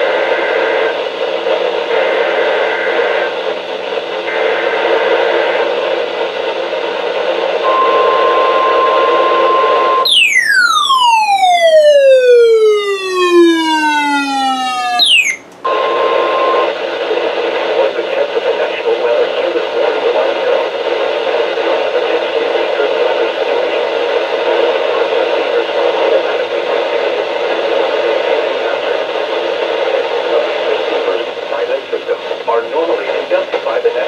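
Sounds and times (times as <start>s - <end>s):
radio hiss: 0.0s - 10.1s, 15.6s - 34.0s
warbling two-tone data bursts: 10.0s - 15.4s
steady alert tone: 10.0s - 15.5s
falling whistle-like glide: 10.1s - 15.4s.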